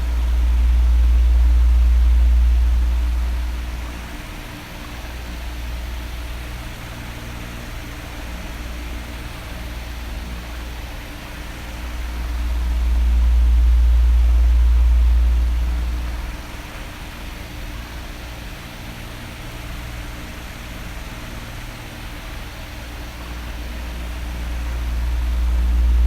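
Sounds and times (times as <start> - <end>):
faint fan motor hum: 0.0 - 26.0
low airflow rumble on microphone: 0.0 - 26.0
fan airflow whooshing: 23.1 - 26.0.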